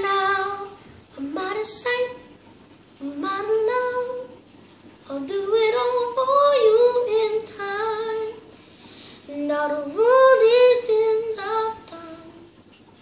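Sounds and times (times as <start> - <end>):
child singing: 0.0 - 2.3, 3.0 - 4.3, 5.1 - 8.4, 9.3 - 12.4.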